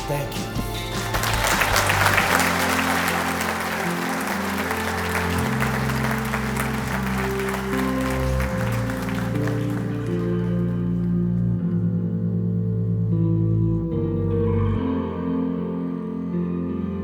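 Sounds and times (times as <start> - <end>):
background music with held notes: 0.0 - 17.0
audience applauding: 0.7 - 11.5.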